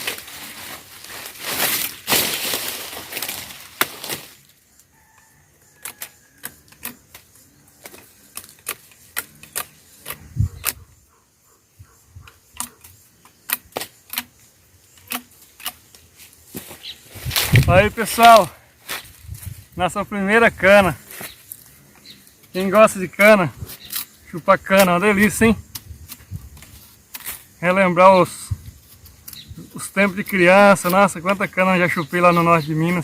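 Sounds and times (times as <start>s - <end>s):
sharp clicks and snaps: 5.8s - 10.9s, 12.2s - 14.4s, 15.0s - 16.0s.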